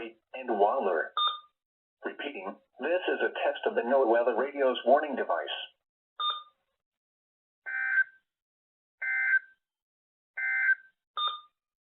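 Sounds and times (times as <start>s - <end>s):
short digital data tones: 10.4s - 11.6s.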